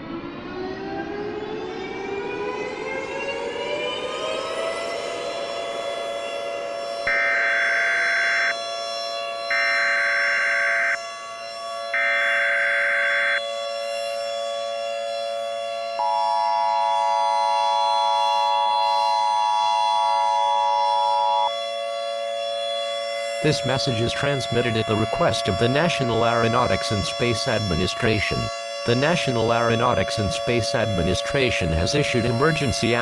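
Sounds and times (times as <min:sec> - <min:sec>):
short buzzing data bursts: 0:07.1 - 0:08.5, 0:09.5 - 0:11.0, 0:12.0 - 0:13.4
two-tone attention signal: 0:07.1 - 0:08.6, 0:09.5 - 0:11.0, 0:12.0 - 0:13.4, 0:16.0 - 0:21.6.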